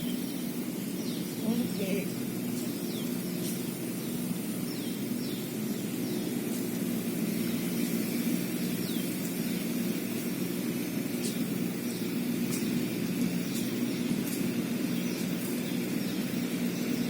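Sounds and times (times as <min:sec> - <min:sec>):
faint bird chirps: 0:00.0 - 0:10.2
low outdoor hum: 0:00.0 - 0:17.0.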